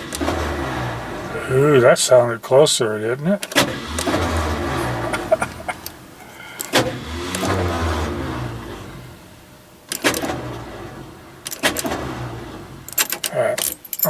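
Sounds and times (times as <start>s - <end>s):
starter cranking engine: 0.0s - 1.5s, 3.4s - 8.8s, 11.4s - 14.0s
starter clicks: 3.4s - 7.6s.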